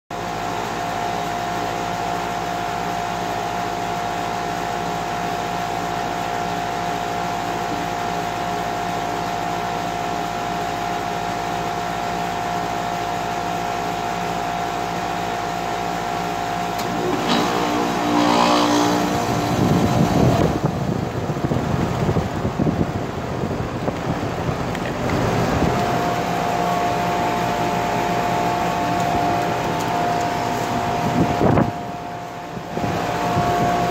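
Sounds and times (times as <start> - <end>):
heat pump humming: 0.1 - 33.9
compressor winding down: 0.4 - 33.9.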